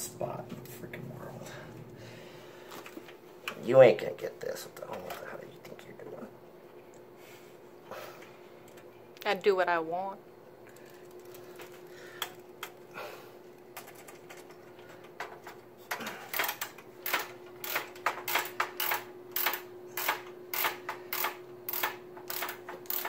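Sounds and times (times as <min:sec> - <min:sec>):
screwdriver clicks: 0:16.3 - 0:23.0.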